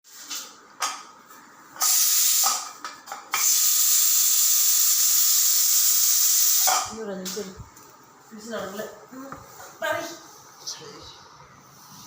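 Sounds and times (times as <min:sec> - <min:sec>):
steam hissing from pressure cooker: 0:01.8 - 0:02.7, 0:03.3 - 0:06.9.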